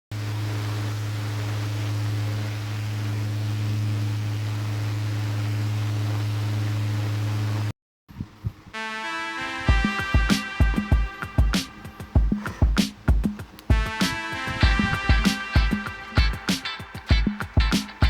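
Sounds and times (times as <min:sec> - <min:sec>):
electric fan humming: 0:00.1 - 0:18.0.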